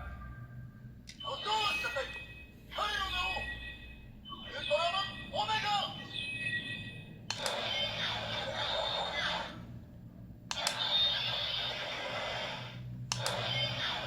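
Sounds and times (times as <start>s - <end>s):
sharp click: 10.5s - 10.8s, 13.1s - 13.4s
toy device sound effects: 10.6s - 11.8s.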